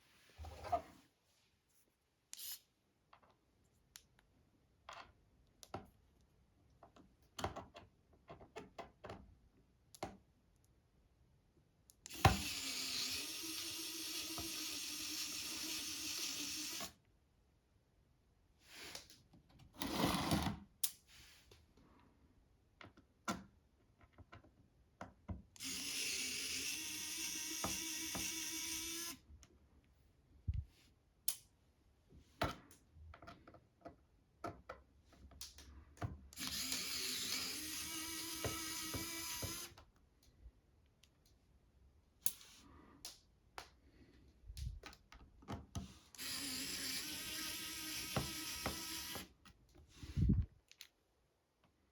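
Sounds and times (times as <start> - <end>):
small power tool motor: 12.1 - 17.0, 25.6 - 29.2, 36.4 - 39.8, 46.2 - 49.3.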